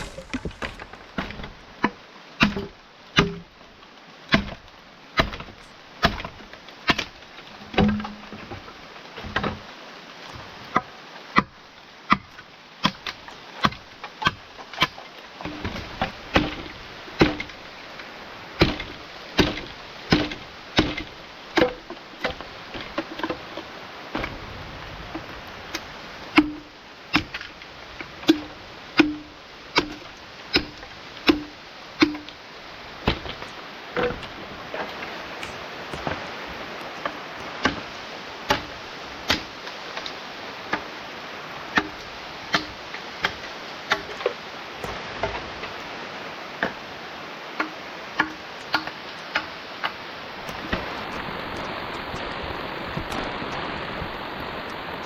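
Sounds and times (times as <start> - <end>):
wood being chopped: 0.0 - 3.6, 4.3 - 8.3, 10.7 - 17.6, 18.6 - 23.4, 25.7 - 27.6, 28.2 - 32.4, 33.0 - 36.4, 37.0 - 40.9, 41.7 - 45.4, 47.6 - 49.5.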